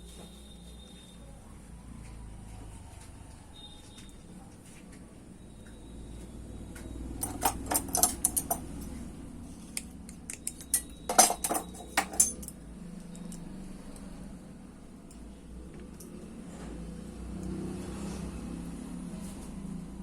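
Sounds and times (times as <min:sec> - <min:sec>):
small metal parts clinking: 0:07.2 - 0:09.0, 0:10.2 - 0:13.5.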